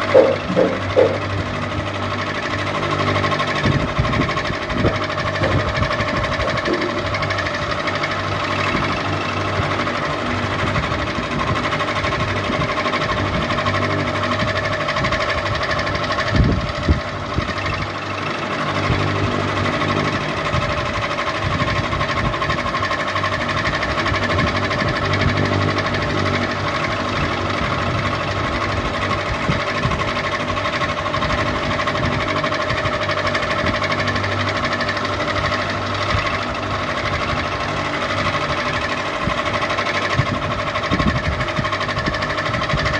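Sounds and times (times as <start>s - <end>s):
short knocks: 0.0s - 1.4s, 4.8s - 7.4s
ceiling fan humming and whirring: 0.0s - 42.9s.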